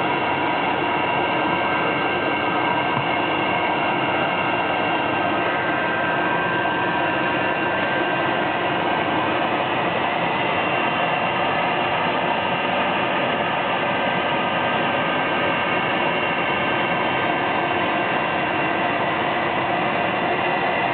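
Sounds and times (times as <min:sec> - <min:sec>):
blow dryer running: 0:00.0 - 0:20.9.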